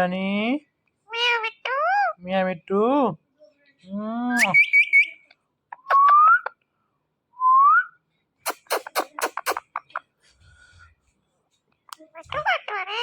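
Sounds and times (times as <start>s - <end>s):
parrot whistling: 4.4s - 5.2s.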